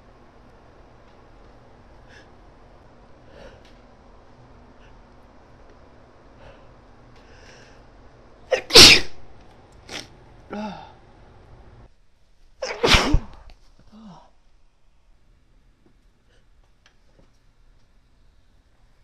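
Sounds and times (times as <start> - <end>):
woman sneezing: 8.5 - 9.2, 12.6 - 13.4.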